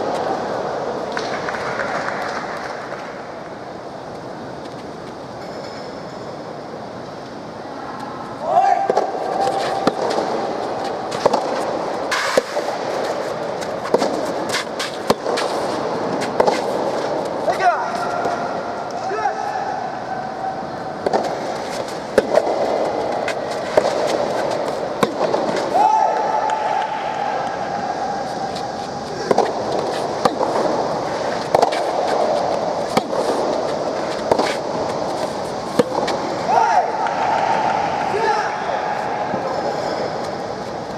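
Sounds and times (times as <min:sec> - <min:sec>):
crowd and arena noise: 0:00.0 - 0:40.9
steady background hum: 0:00.0 - 0:40.9
racket hitting tennis ball: 0:08.8 - 0:19.0, 0:21.0 - 0:38.3.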